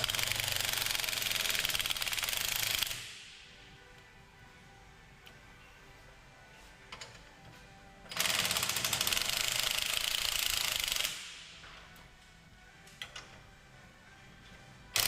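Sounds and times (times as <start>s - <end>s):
impact wrench rattling: 0.0s - 3.1s, 8.1s - 11.7s
faint background music: 0.0s - 15.0s.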